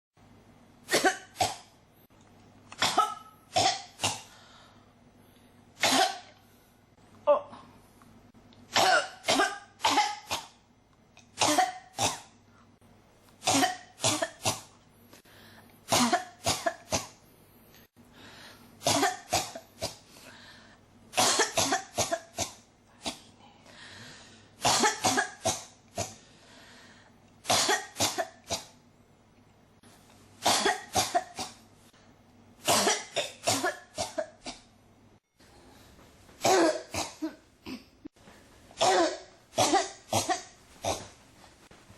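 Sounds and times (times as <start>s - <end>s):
person coughing: 0.9s - 1.7s, 2.8s - 4.4s, 5.8s - 6.4s, 8.7s - 10.6s, 11.4s - 12.3s, 13.4s - 14.7s, 15.9s - 17.2s, 18.8s - 20.0s, 21.2s - 23.4s, 24.6s - 26.2s, 27.5s - 28.7s, 30.4s - 31.6s, 32.7s - 34.7s, 36.4s - 38.1s, 38.8s - 41.1s.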